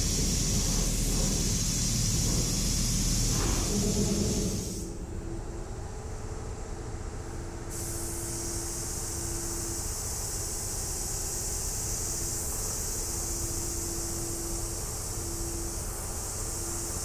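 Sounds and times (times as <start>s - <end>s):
paint spray gun hissing: 7.7s - 17.0s.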